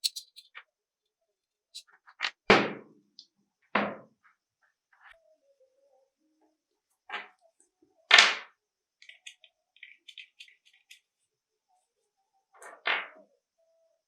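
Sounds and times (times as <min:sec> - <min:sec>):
pistol parts clacking: 0:00.0 - 0:00.4.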